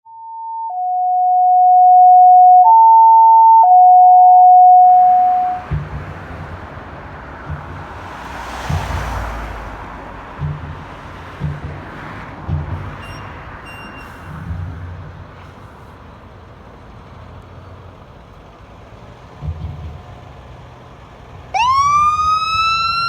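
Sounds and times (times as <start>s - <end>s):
electronic alert tones: 0.1s - 5.6s
fire truck engine running: 12.8s - 23.0s.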